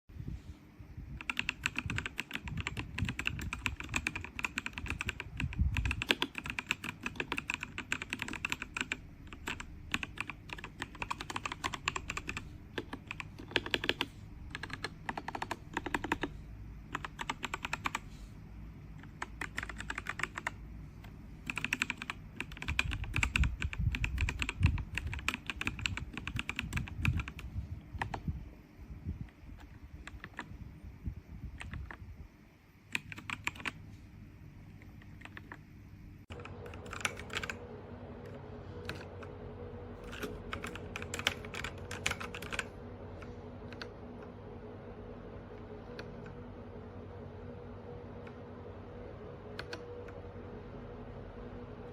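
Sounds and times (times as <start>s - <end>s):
mechanical keyboard typing: 1.2s - 18.0s, 19.0s - 28.3s, 29.6s - 30.6s, 31.6s - 32.0s, 32.9s - 33.8s, 34.8s - 35.6s, 36.3s - 39.4s, 40.0s - 44.4s, 49.5s - 50.3s.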